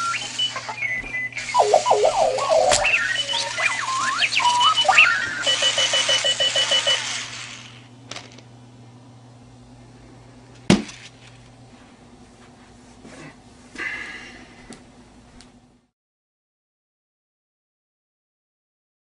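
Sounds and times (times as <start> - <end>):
electronic alarm clock beeping: 0.0 - 7.6.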